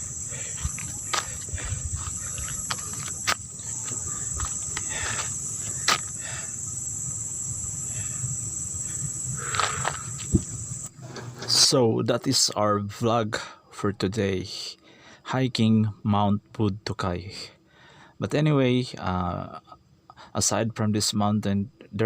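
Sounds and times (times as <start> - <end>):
low rumble: 0.0 - 10.9
insects chorus: 0.0 - 22.0.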